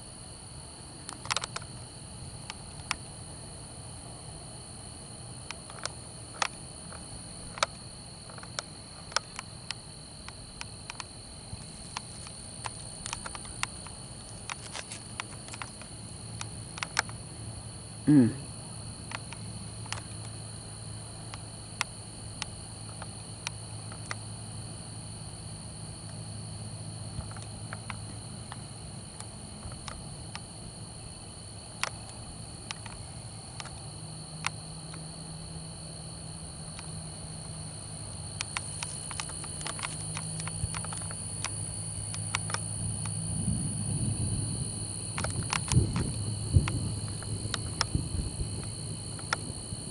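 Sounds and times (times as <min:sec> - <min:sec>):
insects trilling: 0:00.0 - 0:49.9
faint clicks: 0:38.4 - 0:43.5.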